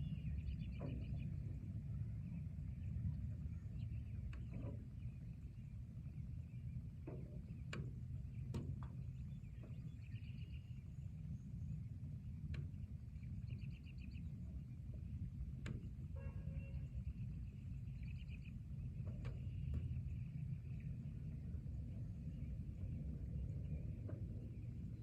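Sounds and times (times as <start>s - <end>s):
steady low rumble: 0.0s - 25.0s.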